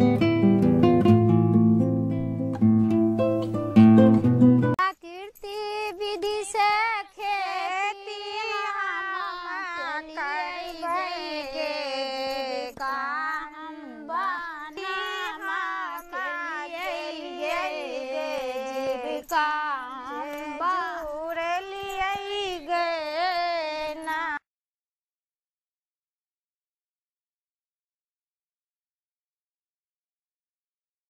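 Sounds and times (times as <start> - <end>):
high-pitched voice singing: 4.8 - 24.4.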